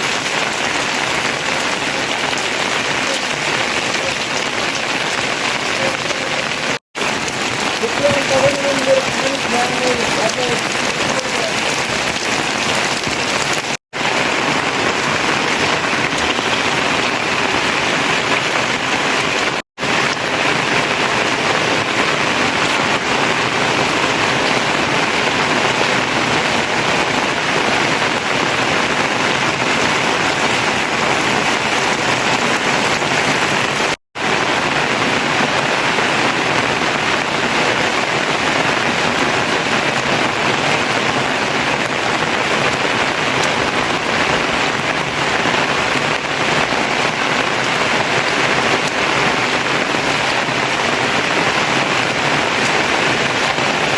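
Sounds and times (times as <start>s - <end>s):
steady rain hiss: 0.0s - 26.7s.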